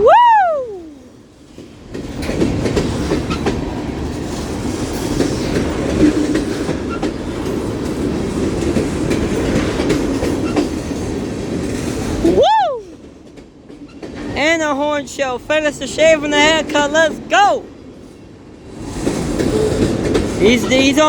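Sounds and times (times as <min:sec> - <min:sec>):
train wheels rumbling on rail: 0:00.9 - 0:21.0.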